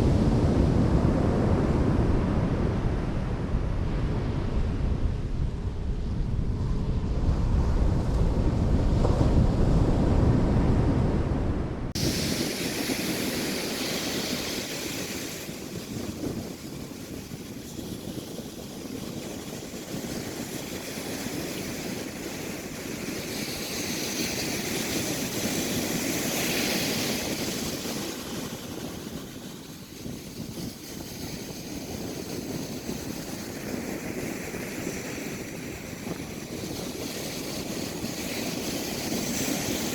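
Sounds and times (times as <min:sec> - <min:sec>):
ocean surf washing on beach: 0:00.0 - 0:39.9
wind buffeting microphone: 0:00.0 - 0:39.9
wind hiss: 0:12.0 - 0:39.9.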